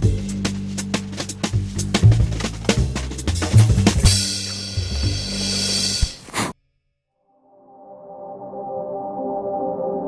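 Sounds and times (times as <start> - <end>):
bass line: 0.0 - 6.3
drum hits: 0.0 - 6.5.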